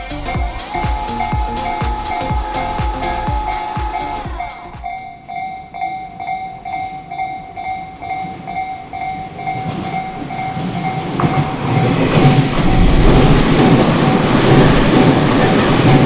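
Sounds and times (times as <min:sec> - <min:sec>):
train running noise: 0:00.0 - 0:05.2, 0:08.2 - 0:16.0
electronic crossing warning bell: 0:00.0 - 0:12.0.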